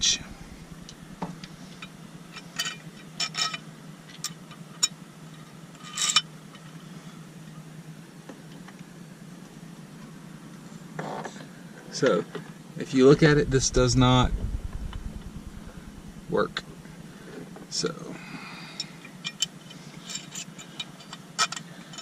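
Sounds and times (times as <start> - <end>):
steady low hum: 0.0 - 2.4, 12.8 - 19.9.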